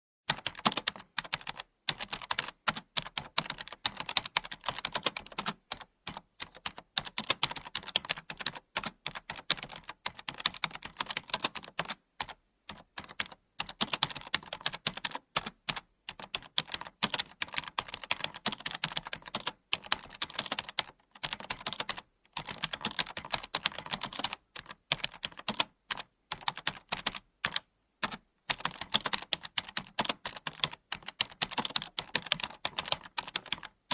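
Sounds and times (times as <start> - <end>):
typing on computer keyboard: 0.3 - 33.9.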